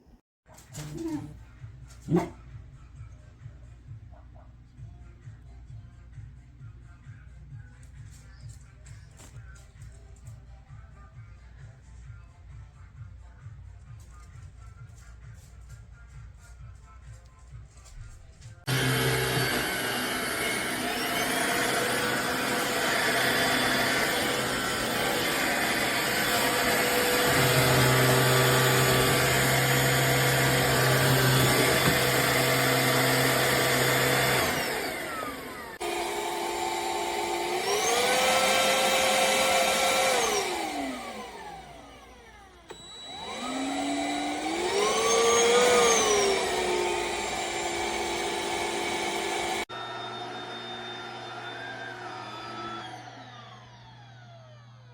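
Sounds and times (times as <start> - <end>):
stick vacuum motor whine: 18.7 - 54.9.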